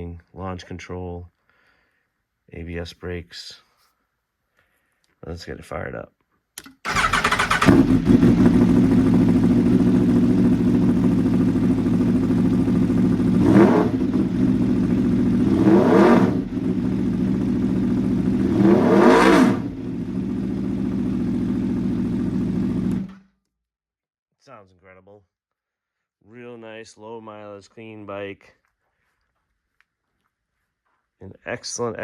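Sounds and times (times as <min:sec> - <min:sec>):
motorcycle engine idling: 0:06.9 - 0:18.6, 0:19.7 - 0:23.2
motorcycle engine revving: 0:06.9 - 0:23.2.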